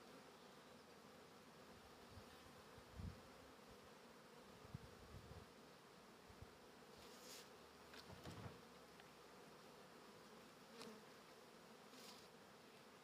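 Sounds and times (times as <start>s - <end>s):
soft rustles: 7.0s - 8.6s.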